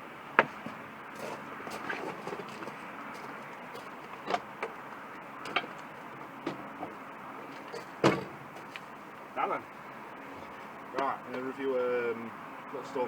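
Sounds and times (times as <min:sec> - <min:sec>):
steady background noise: 0:00.0 - 0:13.0
sharp knocks and clicks: 0:01.8 - 0:08.9.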